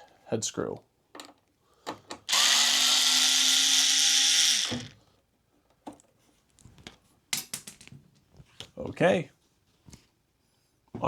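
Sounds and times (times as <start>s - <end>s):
power drill backing out screw: 2.3s - 5.0s.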